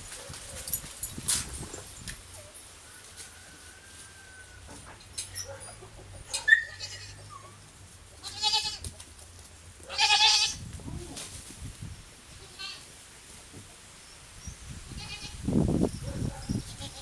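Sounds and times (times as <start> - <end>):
goats bleating: 6.6 - 7.3, 8.2 - 8.8, 9.9 - 10.6.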